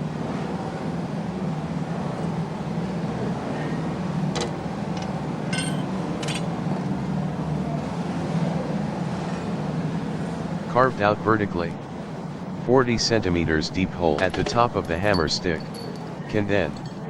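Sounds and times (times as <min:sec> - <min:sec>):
mechanical engine-like drone: 0:00.0 - 0:17.0
sharp metallic clinks: 0:05.5 - 0:06.5, 0:14.8 - 0:17.0.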